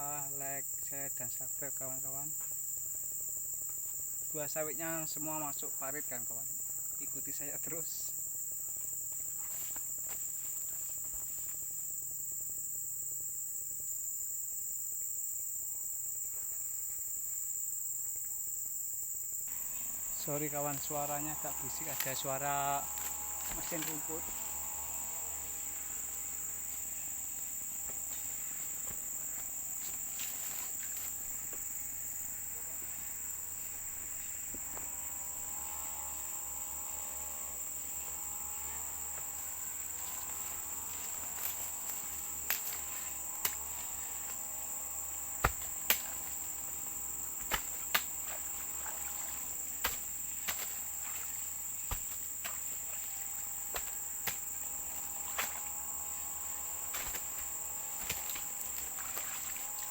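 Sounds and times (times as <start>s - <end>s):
high-pitched insect drone: 0.0s - 59.9s
distant grass-cutting machine: 19.5s - 59.9s
sharp knocks: 45.4s - 46.4s.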